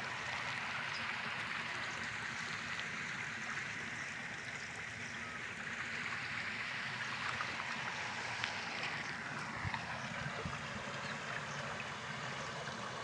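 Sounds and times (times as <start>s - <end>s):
water rushing through sluice gate: 0.0s - 13.0s.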